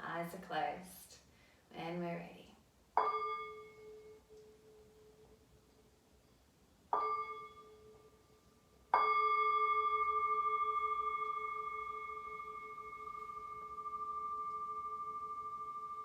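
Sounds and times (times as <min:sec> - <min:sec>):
singing bowl ringing: 0:03.0 - 0:05.4, 0:06.9 - 0:16.0.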